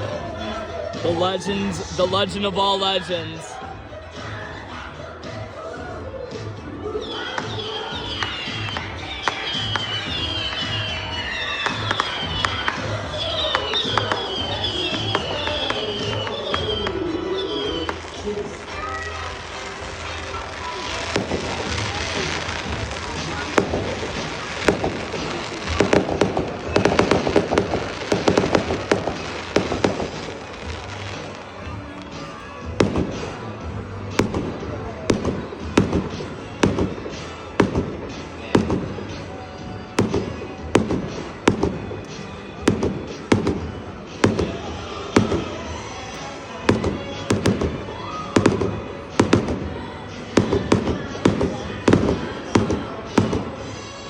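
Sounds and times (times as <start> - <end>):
music: 0.0 - 54.0
fireworks bangs: 5.3 - 54.0.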